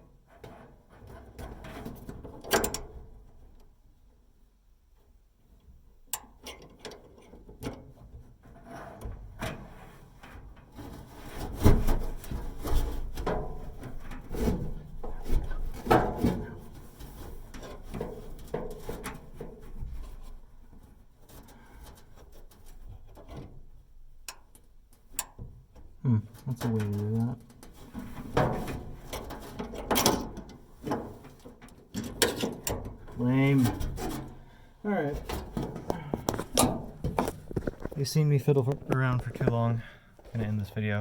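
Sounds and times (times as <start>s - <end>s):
hands scraping and rubbing parts: 26.6s - 40.8s
knocks and clicks of parts: 35.2s - 38.0s.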